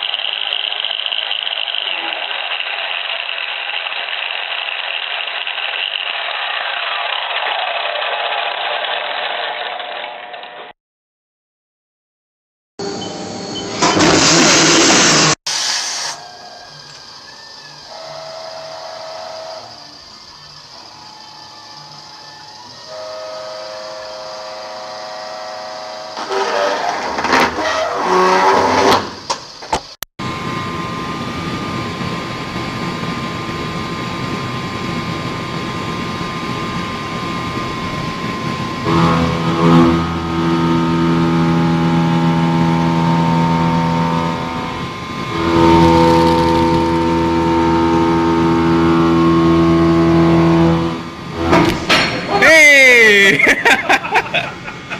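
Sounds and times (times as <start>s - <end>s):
machine tool motors humming: 0.0s - 9.2s, 16.2s - 29.6s, 34.0s - 52.3s.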